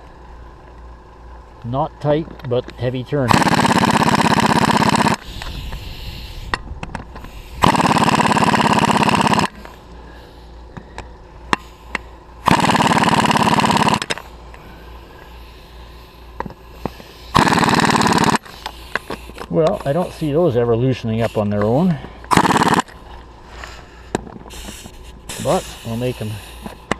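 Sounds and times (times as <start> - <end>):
pneumatic impact wrench hammering: 3.2 - 20.1, 21.2 - 23.0, 24.1 - 26.9.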